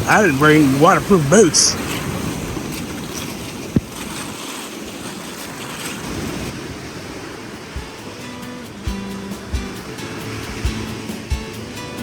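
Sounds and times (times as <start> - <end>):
wind on microphone: 0.0 - 11.6
small waves washing onto stony shore: 0.0 - 12.0.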